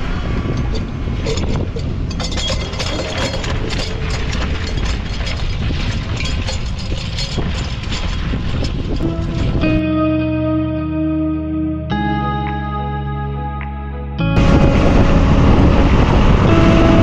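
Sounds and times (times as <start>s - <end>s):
tractor engine running: 0.0s - 9.8s, 14.3s - 17.0s
clattering and rattling knocks: 0.5s - 9.7s.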